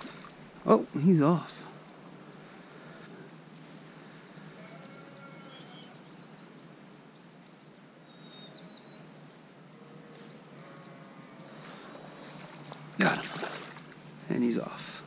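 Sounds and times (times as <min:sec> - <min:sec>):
creek hissing softly: 0:00.0 - 0:04.9, 0:09.0 - 0:15.0
faint bird chirps: 0:01.8 - 0:11.8.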